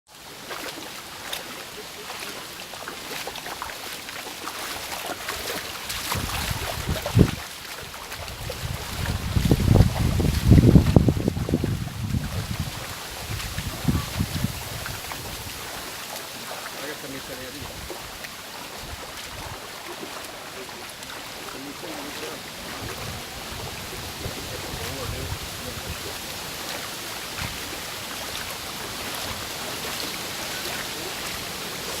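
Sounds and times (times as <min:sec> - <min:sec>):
stream water trickling: 0:00.1 - 0:32.0
wind rumbling on microphone: 0:05.8 - 0:15.9, 0:17.6 - 0:19.6, 0:22.6 - 0:29.7.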